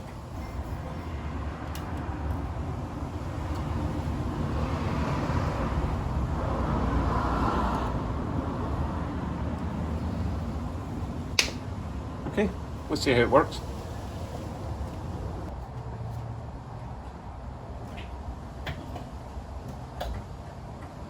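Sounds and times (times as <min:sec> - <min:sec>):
road vehicle passing by: 0:00.2 - 0:21.0.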